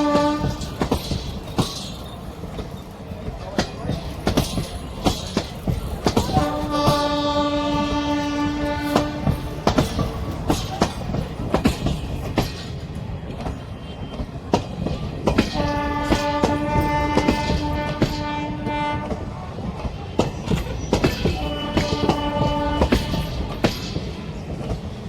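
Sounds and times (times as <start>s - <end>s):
locomotive horn blast: 0.0s - 0.8s, 6.3s - 9.8s, 15.5s - 19.3s, 21.4s - 23.6s
train wheels clicking over rail joints: 0.0s - 25.0s.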